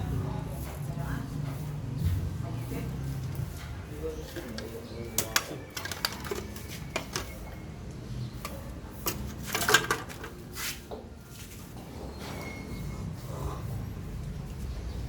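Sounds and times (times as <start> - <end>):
scraping rattle: 4.2 - 7.6, 8.3 - 10.6
tools clicking and knocking: 4.2 - 10.4.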